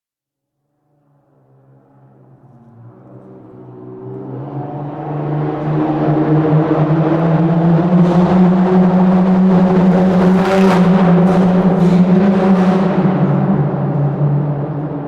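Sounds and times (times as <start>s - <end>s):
car engine droning in tunnel: 0.6s - 15.0s.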